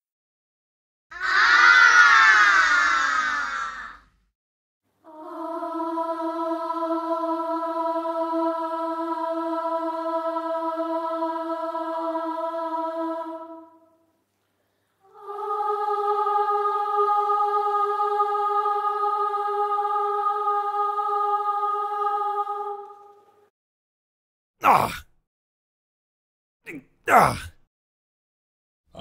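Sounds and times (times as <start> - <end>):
choir singing held chord: 1.2 - 4.0, 5.0 - 14.0, 15.0 - 23.5.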